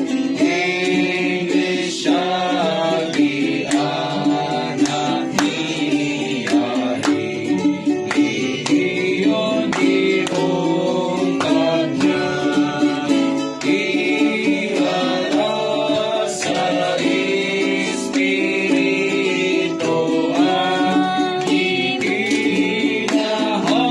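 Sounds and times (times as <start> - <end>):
group singing: 0.0 - 23.9
strummed and plucked guitar: 0.0 - 23.9
steady beat: 0.4 - 23.9.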